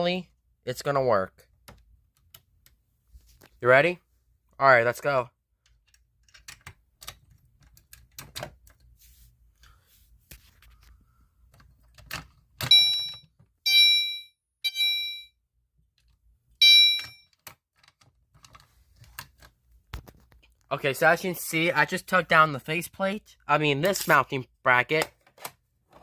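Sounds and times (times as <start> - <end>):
fire alarm horn beeps: 12.7 - 15.4, 16.6 - 17.3.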